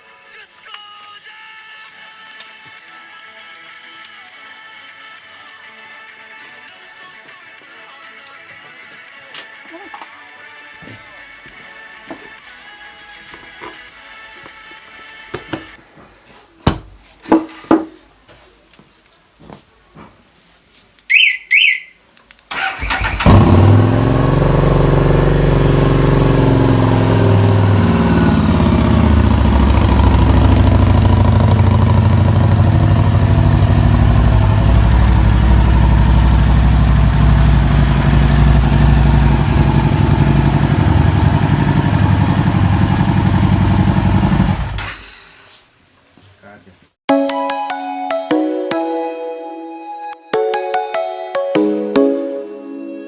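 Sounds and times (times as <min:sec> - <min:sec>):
motorcycle alarm beeps: 0:21.1 - 0:21.9
motorcycle engine starting and idling: 0:22.5 - 0:45.0.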